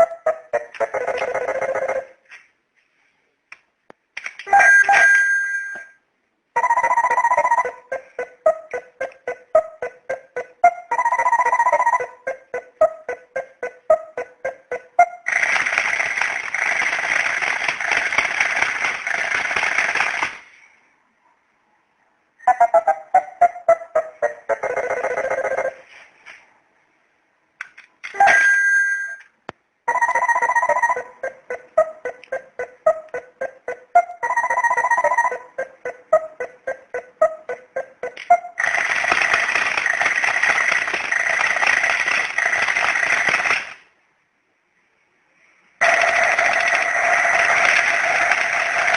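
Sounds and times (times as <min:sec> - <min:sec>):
alarm ringing: 0:04.5 - 0:06.0, 0:06.6 - 0:07.8, 0:10.6 - 0:12.2, 0:28.2 - 0:29.3, 0:29.9 - 0:31.6, 0:33.4 - 0:36.8, 0:45.8 - 0:48.9
loud crackling hiss from alarm clock: 0:15.3 - 0:20.2, 0:38.6 - 0:43.7, 0:45.8 - 0:48.9.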